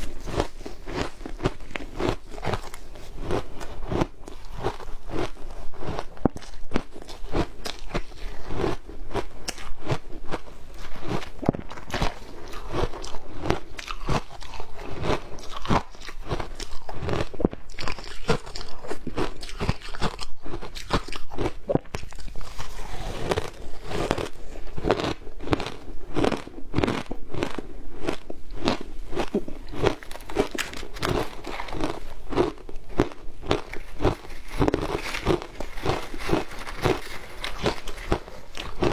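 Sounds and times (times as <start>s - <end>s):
crunching and chewing ice: 0.0s - 38.9s.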